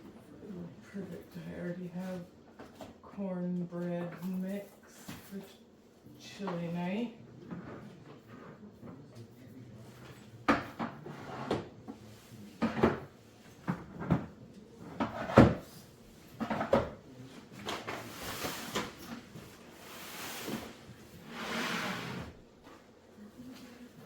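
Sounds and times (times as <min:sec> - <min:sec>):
cupboard doors and drawers closing: 0:14.9 - 0:15.7, 0:19.8 - 0:22.4.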